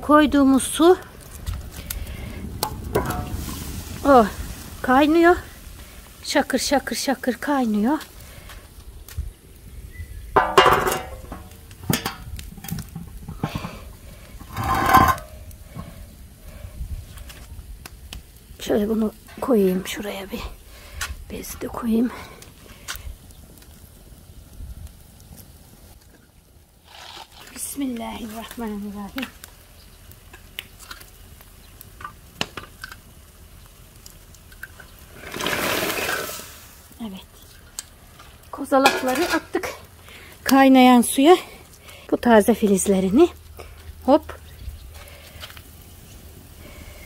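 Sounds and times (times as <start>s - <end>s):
water boiling in a pot: 0.0s - 47.0s
metal cookware clanking: 10.4s - 13.8s, 14.4s - 15.3s, 38.8s - 39.5s.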